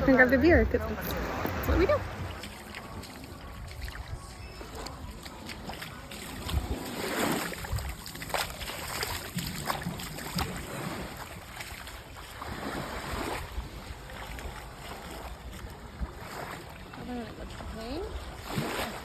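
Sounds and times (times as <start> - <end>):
sea water lapping: 0.0 - 19.0
small splashes: 0.0 - 19.0
wind on microphone: 6.3 - 11.6.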